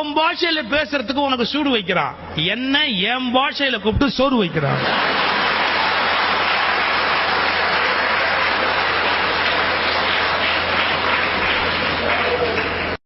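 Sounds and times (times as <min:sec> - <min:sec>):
audience applauding: 0:04.8 - 0:13.0.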